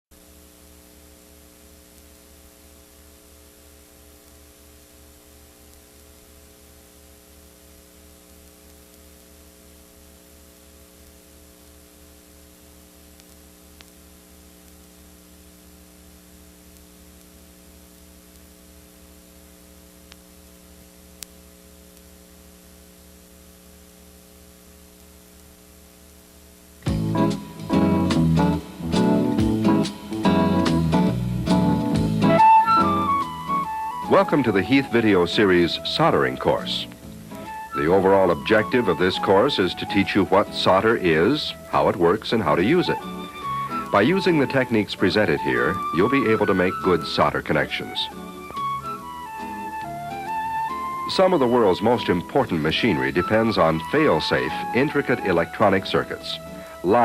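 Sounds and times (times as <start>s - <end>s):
electrical mains hum: 0.1s - 57.0s
static hiss: 0.1s - 57.0s
faint clicks: 13.1s - 14.0s.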